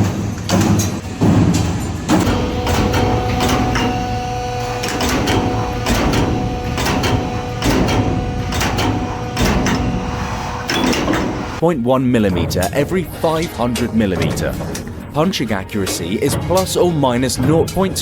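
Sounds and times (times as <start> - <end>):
machine hum: 0.0 - 11.6
machine punching strokes: 0.0 - 11.6.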